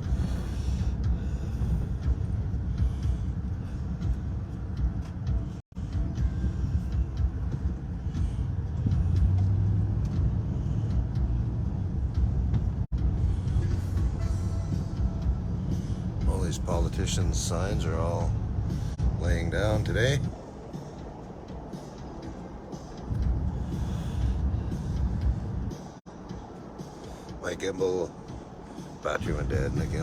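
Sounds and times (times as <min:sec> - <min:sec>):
car road and engine drone: 0:00.0 - 0:30.0.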